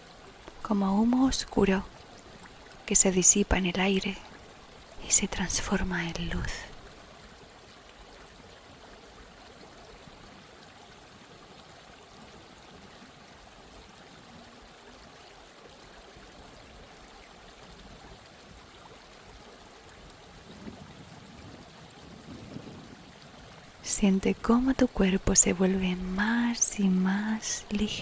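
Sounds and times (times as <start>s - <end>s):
water flowing: 0.0s - 28.0s.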